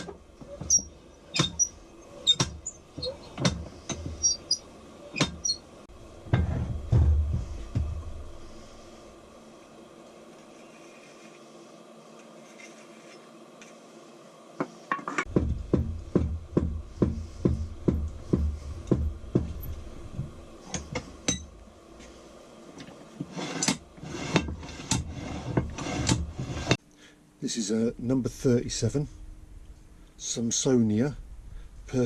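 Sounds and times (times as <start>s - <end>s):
heavy metal knocks and clanks: 6.2s - 8.3s, 15.3s - 21.5s.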